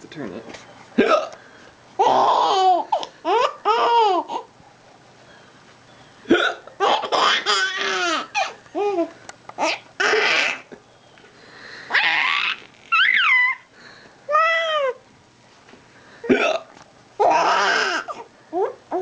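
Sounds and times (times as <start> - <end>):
child giggling and squealing: 11.9 - 13.7, 14.3 - 15.0.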